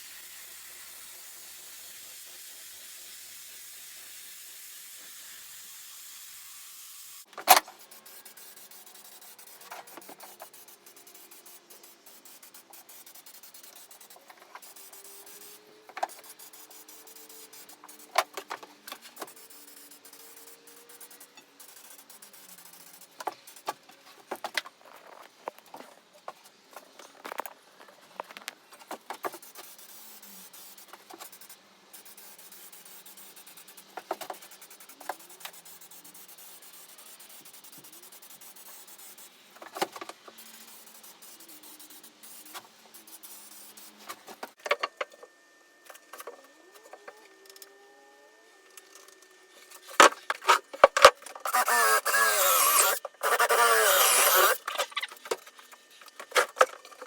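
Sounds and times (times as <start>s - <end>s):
loud squeaky scraping: 51.4s - 55.2s.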